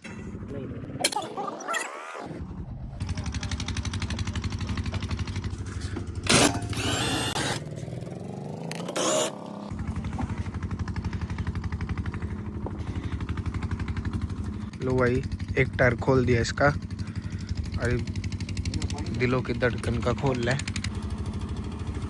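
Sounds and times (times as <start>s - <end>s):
tractor engine idling: 3.0s - 8.1s, 9.7s - 22.0s.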